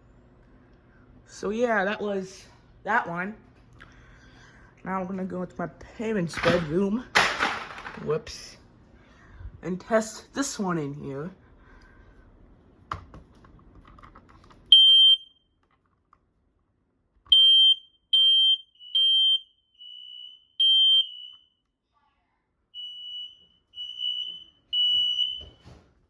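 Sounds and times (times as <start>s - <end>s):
smoke alarm beeping: 14.7s - 15.5s, 17.3s - 21.6s, 22.7s - 25.7s.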